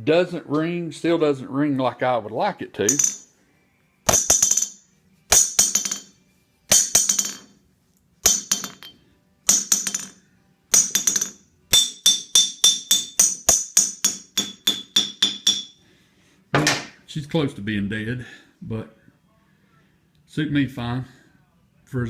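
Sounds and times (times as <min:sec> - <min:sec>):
hammer striking anvil: 0:02.9 - 0:03.3, 0:04.1 - 0:07.6, 0:08.2 - 0:15.8.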